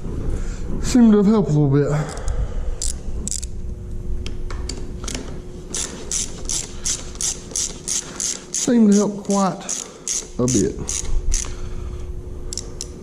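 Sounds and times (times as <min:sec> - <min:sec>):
socket ratchet clicking: 0:02.8 - 0:03.5, 0:04.7 - 0:11.5.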